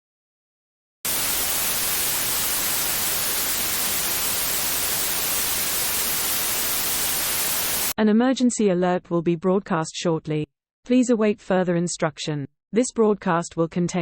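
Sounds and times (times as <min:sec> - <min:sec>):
hissing tv static: 0:01.1 - 0:08.0.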